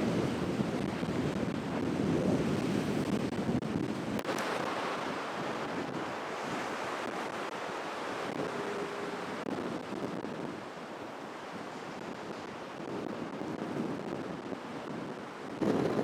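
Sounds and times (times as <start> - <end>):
storm waves breaking: 0.0 - 16.0
wind buffeting microphone: 0.0 - 16.0.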